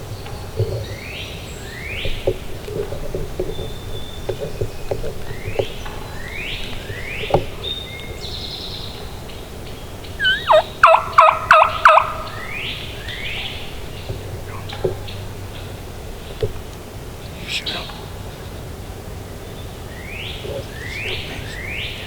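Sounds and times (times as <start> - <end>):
songbirds singing: 0.0 - 22.0
turkey gobbling: 10.0 - 15.8.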